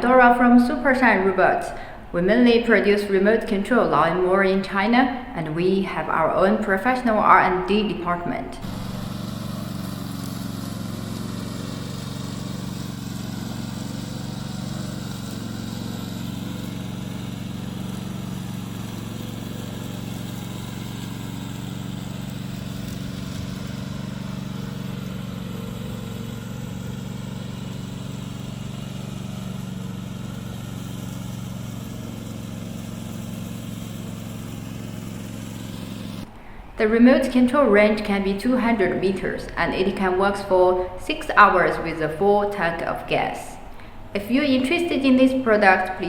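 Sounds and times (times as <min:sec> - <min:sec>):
lawn mower engine running: 0:08.6 - 0:42.9.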